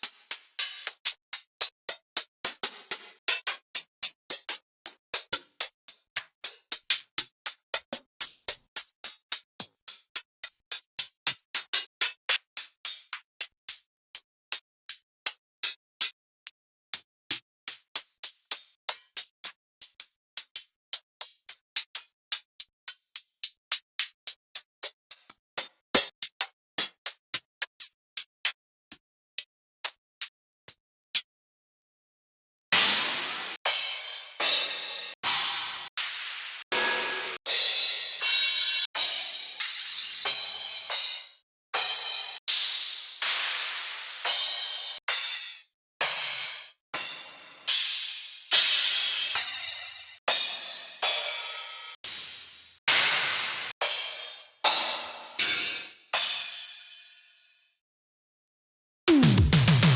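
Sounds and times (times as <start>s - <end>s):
drum machine hits: 59.1s - 59.9s.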